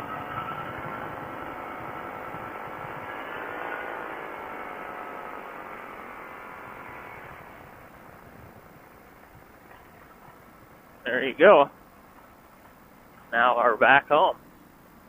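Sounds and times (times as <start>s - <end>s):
ultralight aircraft engine: 0.0s - 11.1s.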